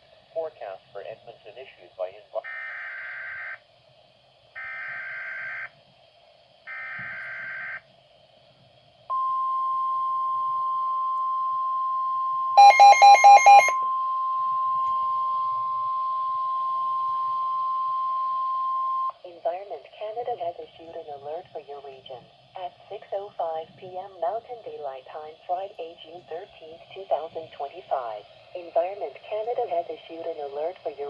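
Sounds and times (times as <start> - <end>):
quick electronic beeps: 12.6 - 13.8
steady alarm tone: 12.6 - 19.1.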